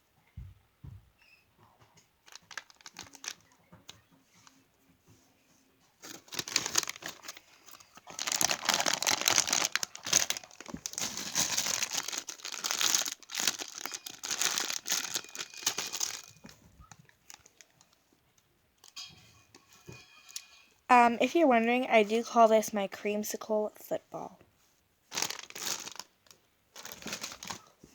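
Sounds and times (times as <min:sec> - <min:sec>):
plastic packaging crinkling: 0:02.2 - 0:04.5, 0:06.0 - 0:18.0, 0:25.1 - 0:27.7.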